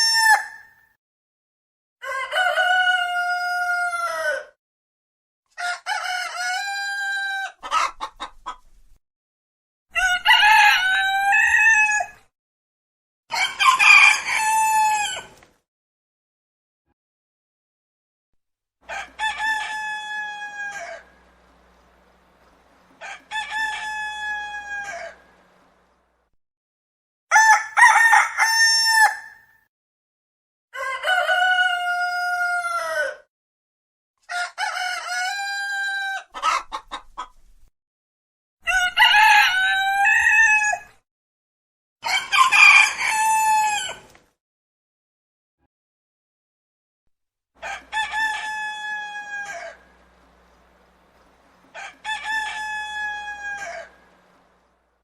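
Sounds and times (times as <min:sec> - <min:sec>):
roosters crowing: 0:00.0 - 0:00.7, 0:02.0 - 0:04.6, 0:05.6 - 0:08.0, 0:10.0 - 0:12.2, 0:13.3 - 0:15.4, 0:18.8 - 0:26.0, 0:27.3 - 0:29.5, 0:30.8 - 0:33.2, 0:34.3 - 0:36.7, 0:38.7 - 0:40.9, 0:42.0 - 0:44.2, 0:47.6 - 0:54.8.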